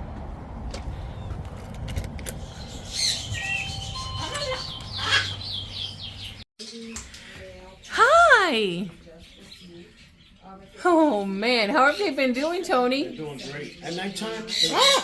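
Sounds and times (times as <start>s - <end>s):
birds whistling and chirping: 2.3s - 7.1s.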